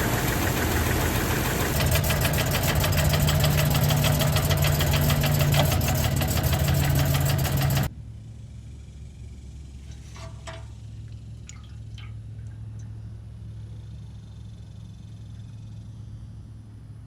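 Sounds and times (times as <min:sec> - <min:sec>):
car engine idling: 0:00.0 - 0:07.9.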